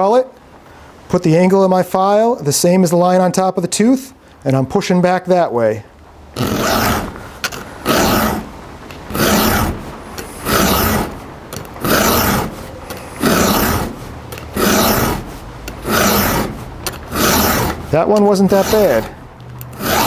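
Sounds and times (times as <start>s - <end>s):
file rasping on saw chain: 6.4s - 8.5s, 9.1s - 20.0s.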